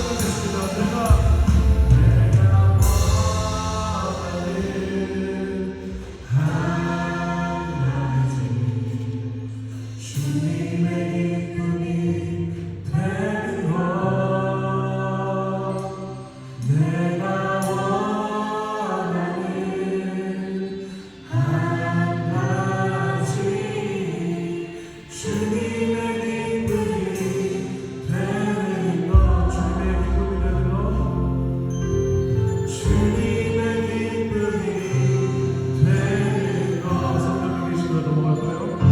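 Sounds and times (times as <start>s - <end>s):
deep bass note: 0.0s - 9.0s, 29.1s - 34.4s
group singing praise song: 0.0s - 9.1s, 10.1s - 31.7s, 32.7s - 38.9s
keyboard accompaniment: 0.0s - 38.9s.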